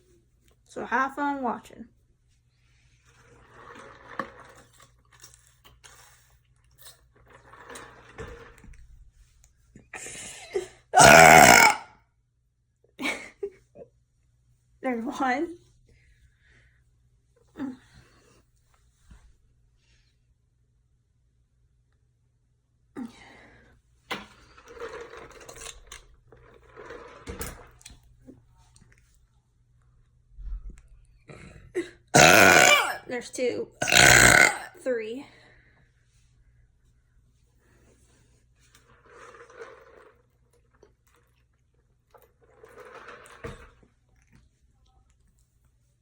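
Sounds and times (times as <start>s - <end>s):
person burping: 10.9s - 11.9s, 32.2s - 33.1s, 33.8s - 34.8s.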